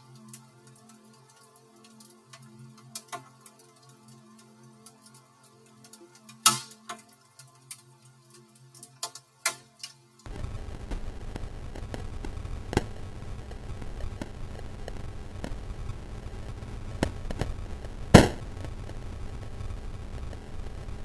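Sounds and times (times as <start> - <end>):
low grainy hiss: 10.1 - 21.0
bitcrushed fire crackling: 10.3 - 21.0.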